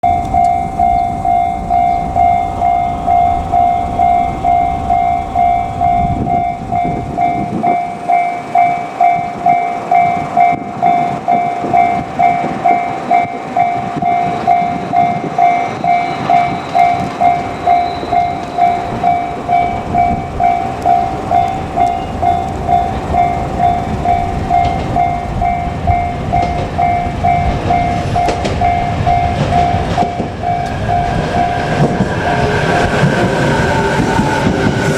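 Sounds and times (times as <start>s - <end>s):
electric train rumbling: 0.0s - 34.9s
level crossing alarm ringing: 0.0s - 34.9s.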